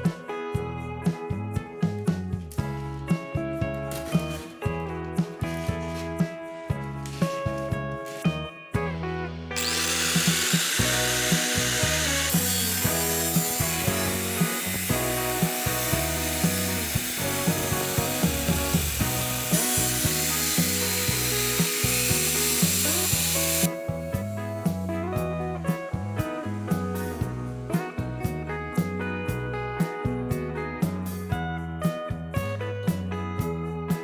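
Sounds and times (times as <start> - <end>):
background music: 0.0 - 34.0
power tool harsh noise: 9.6 - 23.7.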